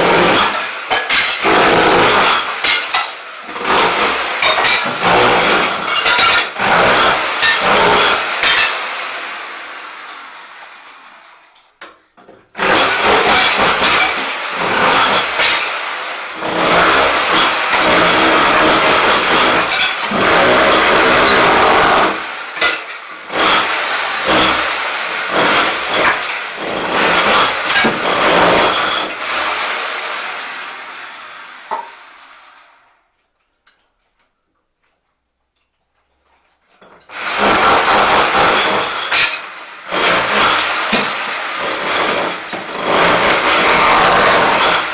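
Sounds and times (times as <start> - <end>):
rotary hammer chipping tiles: 0.0 - 8.8, 12.6 - 15.8, 16.4 - 29.2, 37.1 - 44.9.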